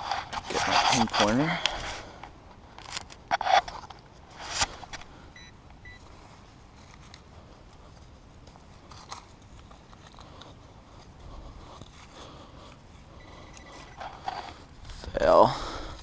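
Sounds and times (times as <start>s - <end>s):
rustling scrape: 0.0s - 2.1s, 2.8s - 5.0s, 6.1s - 15.2s
faint electronic beeps: 5.3s - 6.1s, 13.2s - 14.0s.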